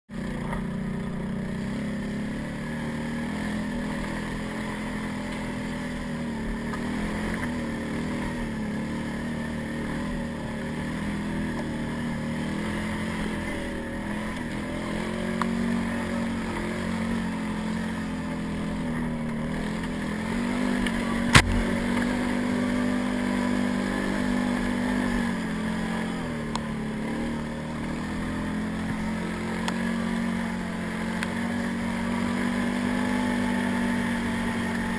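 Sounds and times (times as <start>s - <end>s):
atv engine running: 0.1s - 34.9s
sharp knock: 21.3s - 21.9s.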